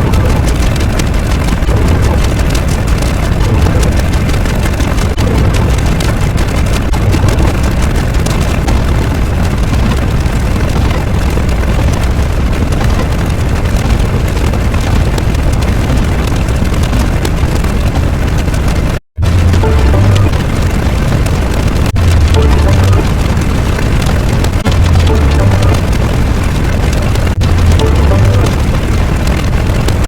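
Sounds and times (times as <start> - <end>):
loud low rumbling noise: 0.0 - 30.0.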